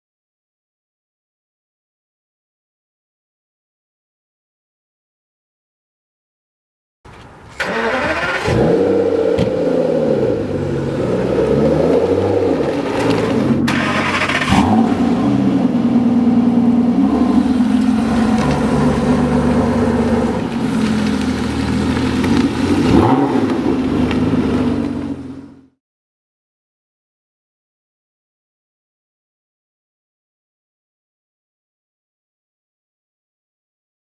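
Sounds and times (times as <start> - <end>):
car engine starting and revving: 7.1 - 25.8.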